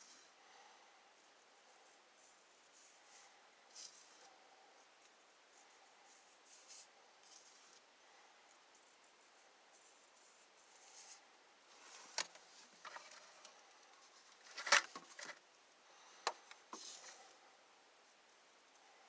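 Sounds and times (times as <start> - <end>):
faint rubbing: 1.2 - 7.9, 8.5 - 15.4, 16.7 - 17.4.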